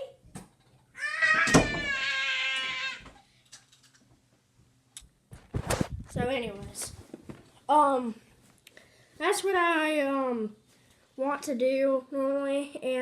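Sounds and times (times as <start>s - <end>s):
high-pitched wailing cry: 1.0s - 3.2s.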